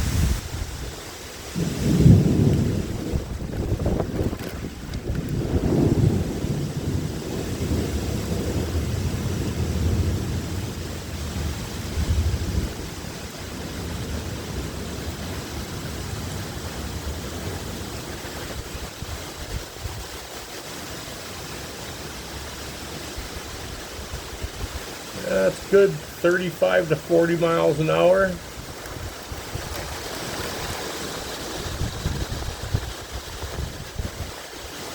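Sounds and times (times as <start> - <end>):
gusting wind: 0.0 - 20.8, 22.9 - 26.1, 28.2 - 34.9
steady rain: 0.0 - 34.9
thunder rumbling: 1.5 - 19.2, 23.5 - 34.5.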